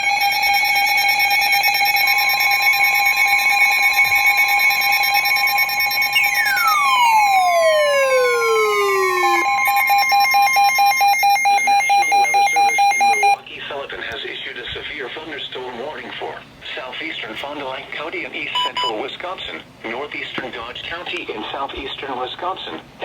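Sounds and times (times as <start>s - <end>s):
electronic alert tones: 0.0s - 13.4s
tone sweeping down in pitch: 2.0s - 13.4s.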